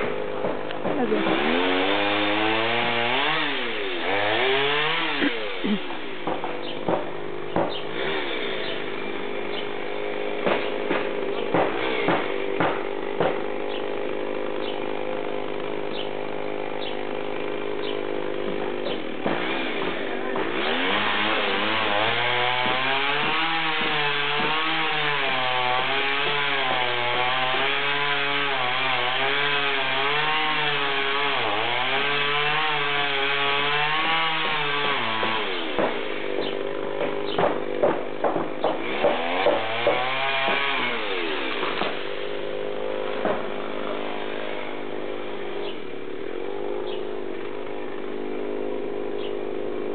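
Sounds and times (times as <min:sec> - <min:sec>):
chainsaw running and cutting: 0:00.0 - 0:49.9
sharp knocks: 0:06.2 - 0:07.9, 0:10.4 - 0:13.6, 0:18.5 - 0:21.0, 0:35.2 - 0:40.8, 0:43.2 - 0:43.6.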